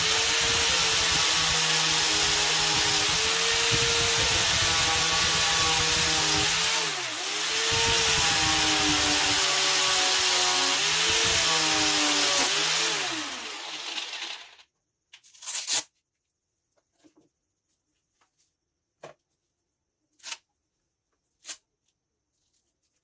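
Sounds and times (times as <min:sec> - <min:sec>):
electric grinder on steel: 0:00.0 - 0:14.6.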